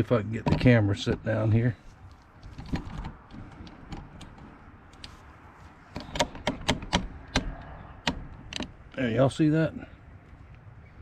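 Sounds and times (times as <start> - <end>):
taps and bumps: 5.9 - 8.8.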